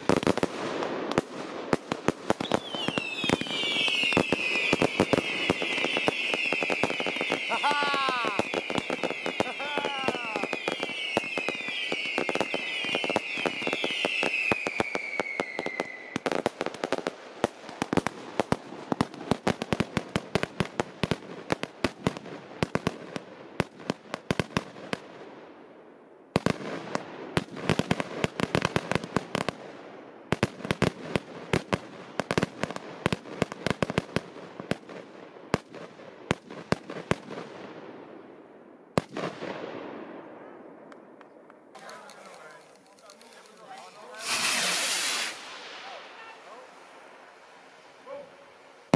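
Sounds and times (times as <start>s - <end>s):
rapid firework bangs: 0.0s - 25.0s, 41.8s - 48.3s
fireworks crackling: 0.0s - 25.4s, 26.4s - 37.7s, 38.9s - 48.9s
whistling fireworks shrieking: 2.0s - 17.1s, 41.7s - 48.9s.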